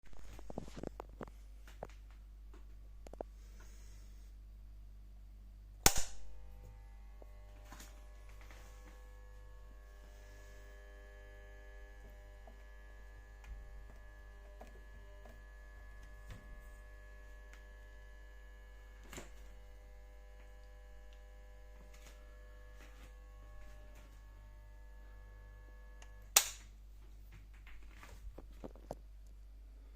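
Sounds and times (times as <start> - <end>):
loud sharp switch click: 5.8 - 6.3, 26.4 - 26.6
electric oven buzzing: 6.2 - 26.6.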